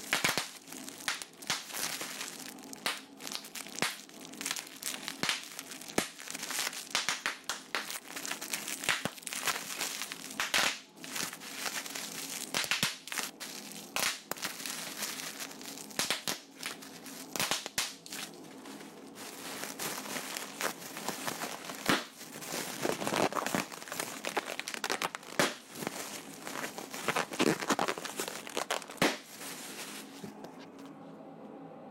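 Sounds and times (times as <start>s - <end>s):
crinkling and crumpling: 0.0s - 30.9s.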